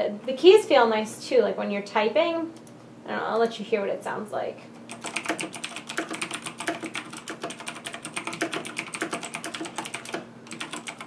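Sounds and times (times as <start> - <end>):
mechanical keyboard clicking: 4.9 - 11.0.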